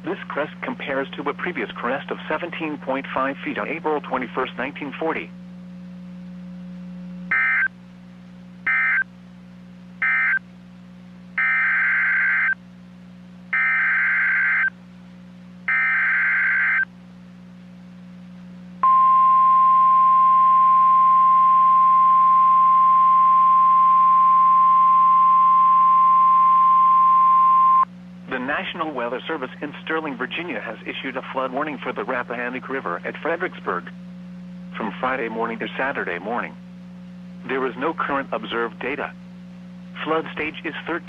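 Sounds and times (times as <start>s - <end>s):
faint low hum: 0.0s - 41.0s
screeching data bursts: 7.3s - 7.7s, 8.7s - 9.0s, 13.6s - 14.7s, 15.7s - 16.8s
steady alarm tone: 7.3s - 7.7s, 8.7s - 9.1s, 10.0s - 10.4s, 11.4s - 12.6s, 13.5s - 14.7s, 15.7s - 16.9s, 18.8s - 27.9s.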